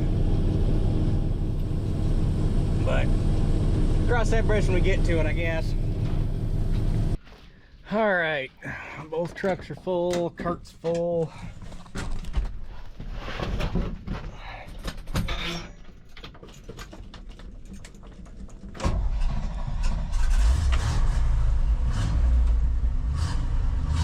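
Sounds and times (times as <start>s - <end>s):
truck engine starting and running: 0.0s - 7.2s, 18.2s - 24.0s.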